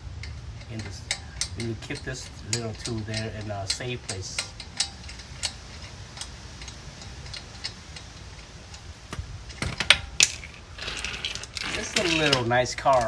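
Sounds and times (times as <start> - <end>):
small metal tools clicking: 0.2 - 8.8, 9.5 - 13.0
sharp metallic clinks: 9.6 - 13.0.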